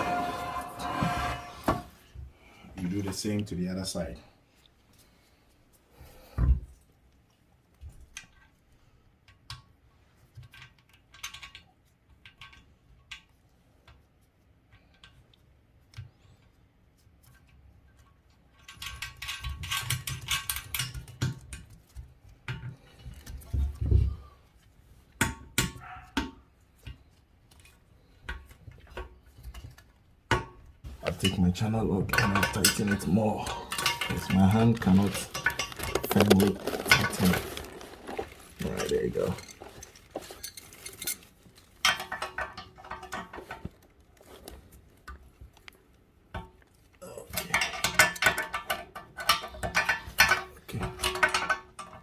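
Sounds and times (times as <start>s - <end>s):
metallic rattling: 31.0s - 43.6s
clicks and clinks of nuts: 32.1s - 43.9s.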